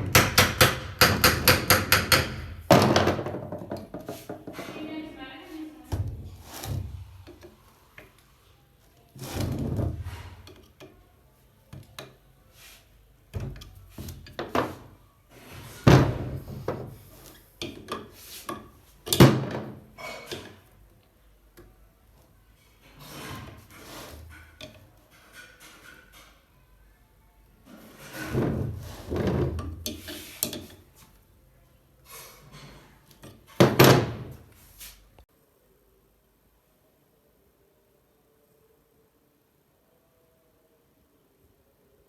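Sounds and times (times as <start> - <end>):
hard parts clunking and knocking: 0.0 - 5.1, 13.3 - 14.9.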